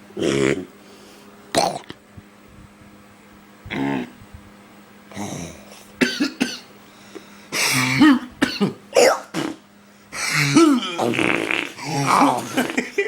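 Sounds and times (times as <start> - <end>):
person coughing harshly: 5.2 - 6.7, 7.5 - 9.6, 10.2 - 13.0.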